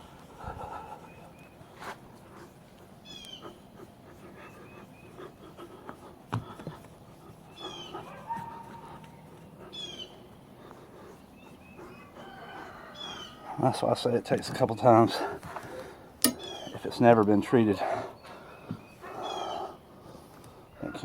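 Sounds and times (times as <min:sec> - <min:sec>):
high-pitched animal calls: 0:07.5 - 0:08.8.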